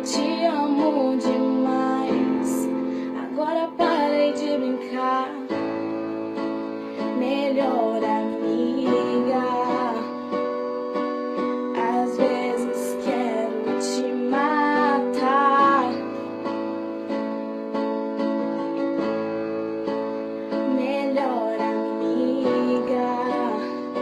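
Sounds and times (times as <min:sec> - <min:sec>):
woman singing wordless phrases: 0:00.0 - 0:05.5, 0:07.2 - 0:10.1, 0:11.8 - 0:16.0, 0:20.7 - 0:23.8.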